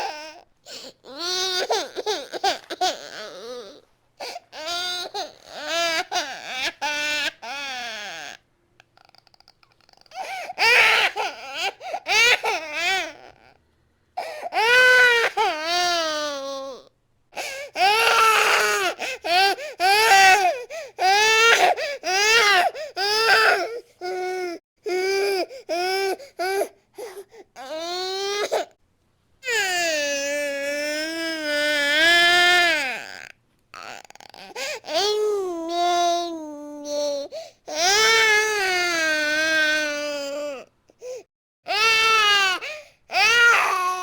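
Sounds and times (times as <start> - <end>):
infant crying: 0.0 - 8.4, 10.1 - 13.6, 14.2 - 28.7, 29.4 - 44.0
infant gasping for breath: 0.6 - 1.0, 4.2 - 4.5, 10.1 - 10.6, 14.2 - 14.6, 17.4 - 17.8, 19.0 - 19.8, 20.4 - 21.0, 21.6 - 22.0, 22.6 - 23.0, 25.4 - 27.6, 34.4 - 34.9, 37.2 - 37.7, 41.0 - 41.3, 42.6 - 43.0.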